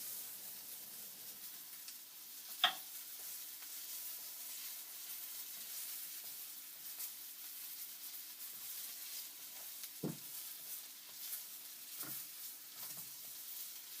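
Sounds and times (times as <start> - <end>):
bacon sizzling: 0.0 - 14.0
fat popping: 2.6 - 2.9.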